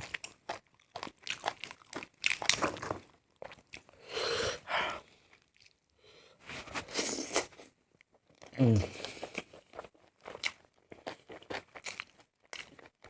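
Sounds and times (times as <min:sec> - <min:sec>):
crunchy biting and chewing: 0:00.0 - 0:03.9.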